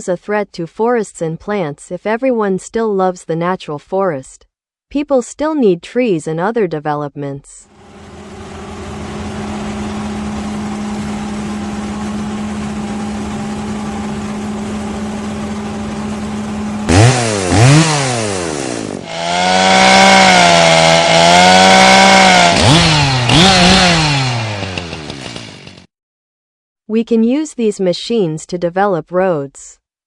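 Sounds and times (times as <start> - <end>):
chainsaw engine revving: 7.8 - 25.9.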